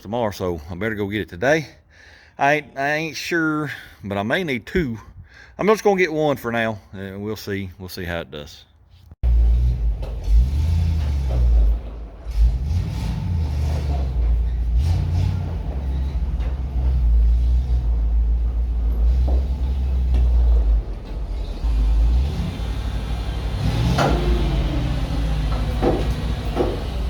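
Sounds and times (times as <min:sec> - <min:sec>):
truck engine rumbling: 0:09.2 - 0:27.0.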